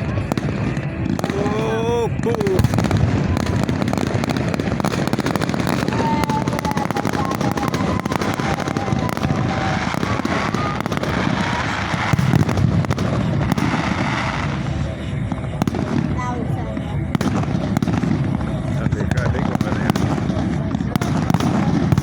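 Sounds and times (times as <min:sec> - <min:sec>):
fireworks crackling bangs: 0:00.0 - 0:22.0
thin wavering whistle: 0:05.7 - 0:12.1.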